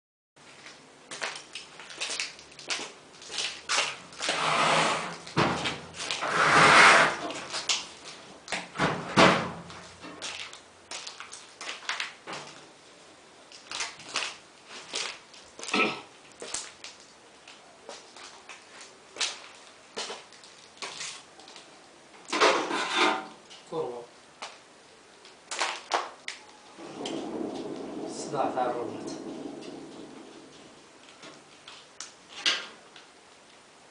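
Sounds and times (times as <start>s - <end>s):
scraping or rubbing: 4.2s - 5.3s, 6.0s - 7.6s, 22.5s - 23.3s, 26.8s - 30.9s.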